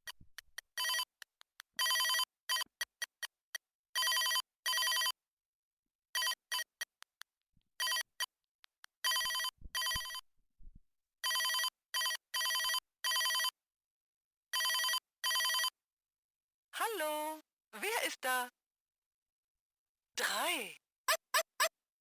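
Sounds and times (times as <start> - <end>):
toy telephone ringing: 0.8 - 1.1, 1.8 - 2.7, 4.0 - 5.2, 11.2 - 13.6, 14.6 - 15.7.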